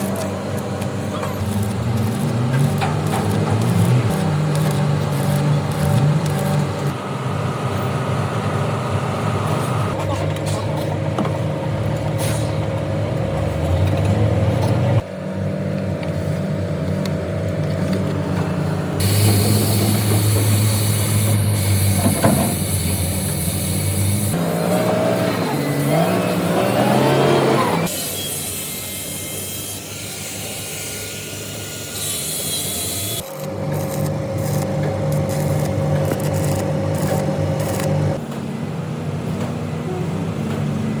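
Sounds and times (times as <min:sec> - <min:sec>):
heavy machine engine running: 0:00.0 - 0:16.8, 0:17.4 - 0:27.9, 0:33.2 - 0:41.0.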